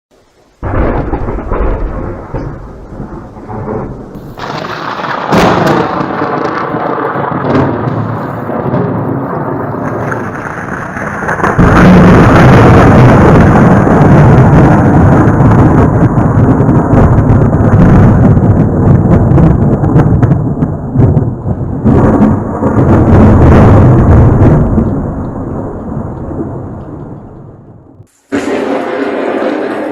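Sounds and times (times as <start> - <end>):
rain hissing: 0.2 - 16.7
thunder rumbling: 0.2 - 29.9.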